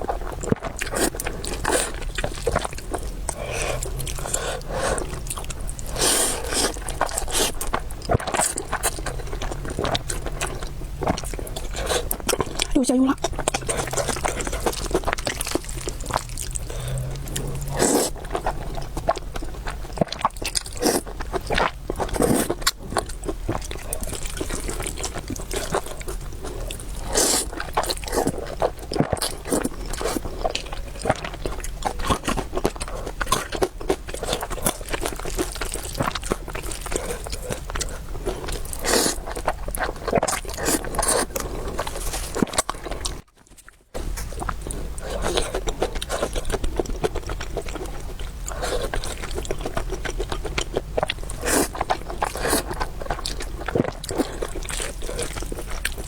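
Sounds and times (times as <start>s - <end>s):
person chewing noodles: 0.0s - 56.0s.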